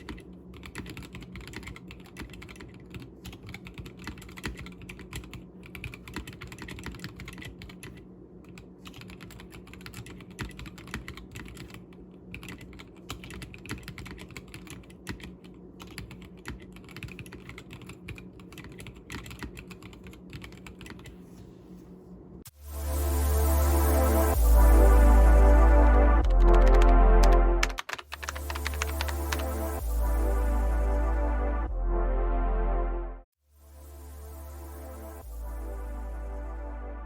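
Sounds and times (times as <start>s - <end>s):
mechanical keyboard typing: 0.0s - 21.2s, 26.2s - 29.8s.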